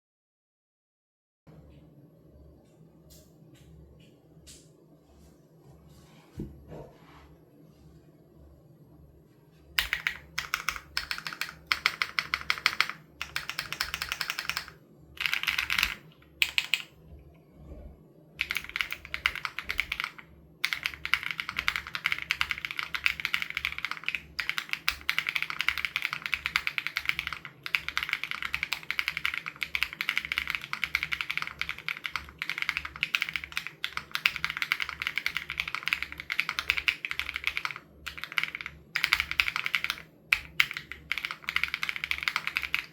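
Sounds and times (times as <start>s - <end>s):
mechanical keyboard typing: 9.8s - 17.0s, 18.4s - 42.9s.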